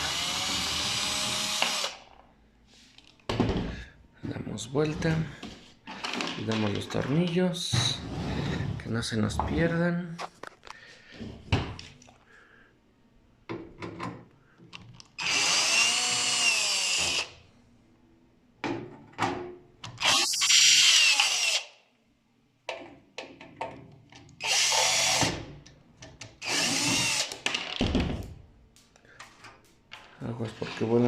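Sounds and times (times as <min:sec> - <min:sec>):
screws clicking and knocking: 0:19.9 - 0:21.6.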